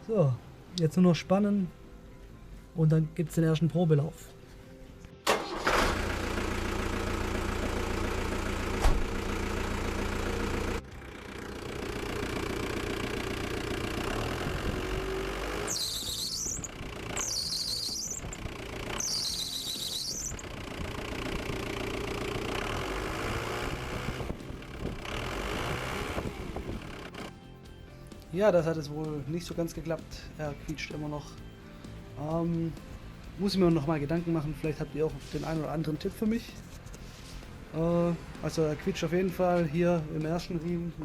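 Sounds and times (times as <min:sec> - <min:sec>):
van engine running: 0:05.2 - 0:27.8, 0:29.1 - 0:41.0
drive belt squealing: 0:12.9 - 0:26.2.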